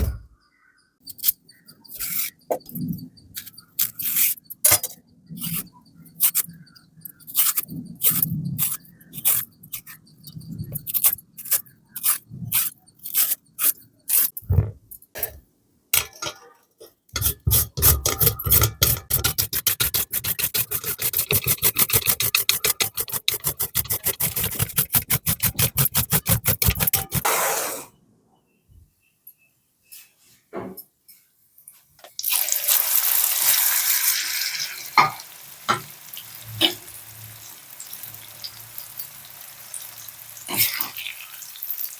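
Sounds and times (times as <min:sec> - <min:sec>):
scraping strokes of food preparation: 0:17.2 - 0:27.9, 0:35.0 - 0:41.9.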